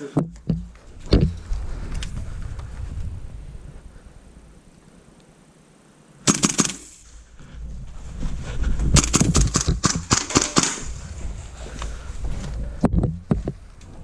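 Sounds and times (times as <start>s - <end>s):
low rumble on microphone: 0.2s - 4.7s, 7.1s - 10.1s
airsoft guns firing: 6.3s - 7.0s, 9.0s - 10.9s.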